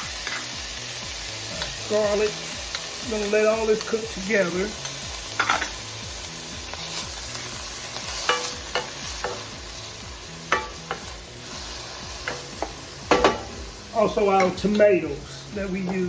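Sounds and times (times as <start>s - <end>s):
food sizzling in a frying pan: 0.0s - 16.0s
utensil knocking against pan: 12.2s - 13.6s.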